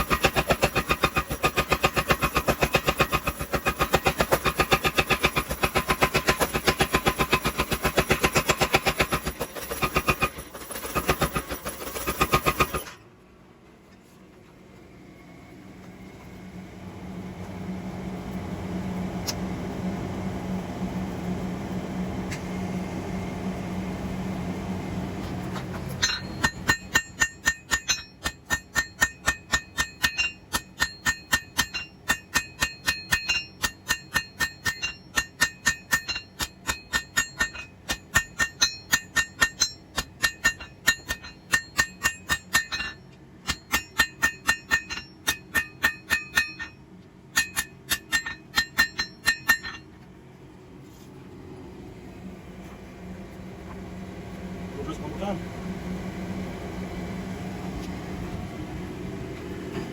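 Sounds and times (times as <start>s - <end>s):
steady hum: 12.6s - 59.9s
hammer striking metal on anvil: 25.8s - 49.9s.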